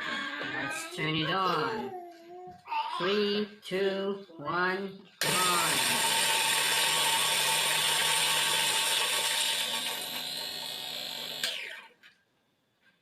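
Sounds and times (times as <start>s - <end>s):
coffee grinder grinding beans: 5.2s - 12.0s.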